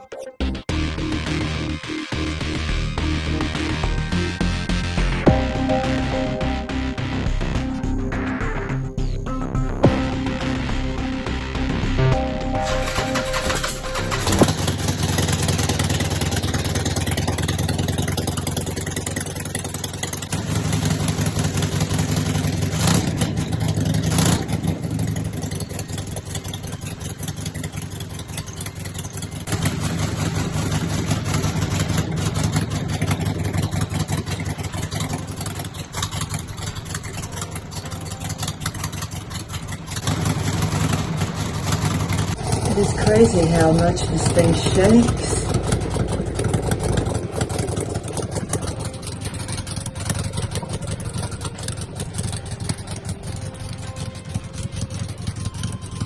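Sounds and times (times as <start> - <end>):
motorcycle engine running: 0.4 - 56.0
throttle blips: 5.2 - 15.4.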